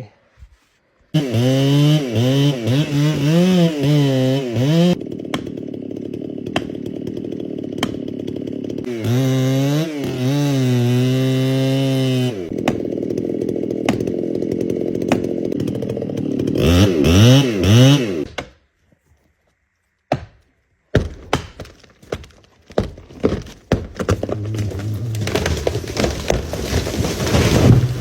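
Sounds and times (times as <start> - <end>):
chainsaw revving: 1.2 - 18.2, 24.2 - 28.0
wood cracking and breaking: 20.9 - 28.0.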